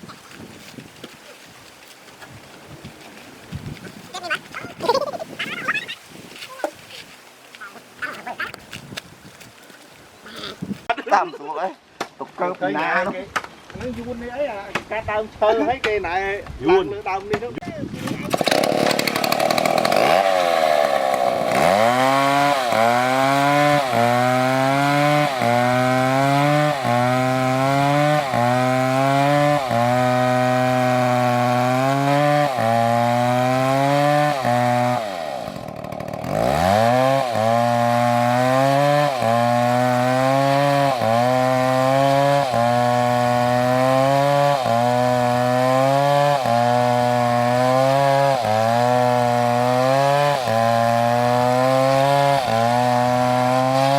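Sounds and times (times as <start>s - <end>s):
chainsaw cutting wood: 18.0s - 53.9s.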